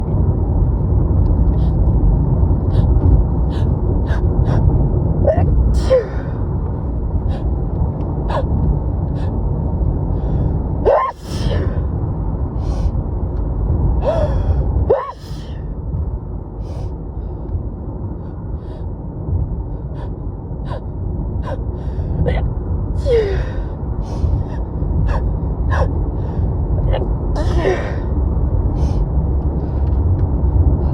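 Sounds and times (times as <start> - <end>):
steady low rumble: 0.0 - 30.9
woman sneezing: 10.9 - 11.7, 14.9 - 15.6, 26.9 - 28.0
gasping intakes of breath: 14.0 - 15.6.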